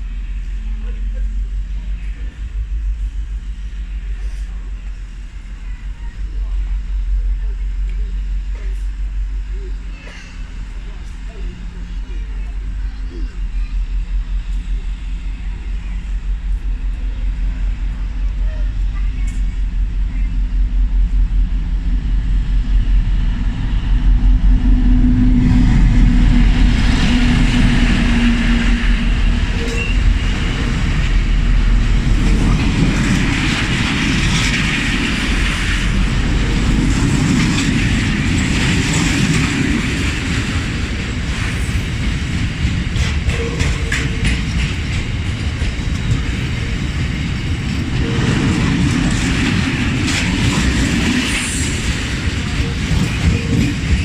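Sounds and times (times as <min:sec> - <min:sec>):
diesel locomotive engine running: 0:00.0 - 0:54.0
wheels clicking over rail joints: 0:32.0 - 0:54.0.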